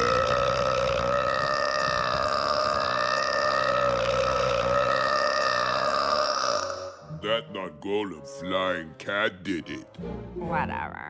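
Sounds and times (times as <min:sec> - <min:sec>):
cartoon character burping: 0:00.0 - 0:07.2.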